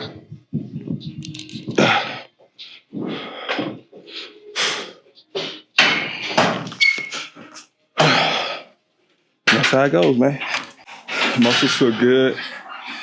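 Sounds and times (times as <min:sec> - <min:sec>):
man breathing hard: 0:01.8 - 0:06.4.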